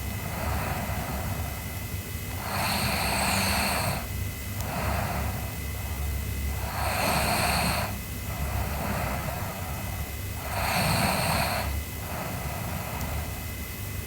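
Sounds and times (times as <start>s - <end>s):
soft breath: 0.0s - 14.0s
girl snoring: 2.4s - 13.4s.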